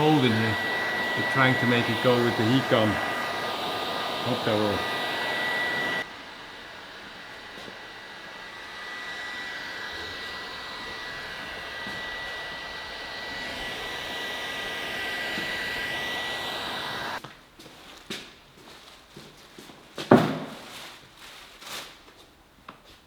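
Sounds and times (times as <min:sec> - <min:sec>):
heat gun blowing air: 0:00.0 - 0:17.2.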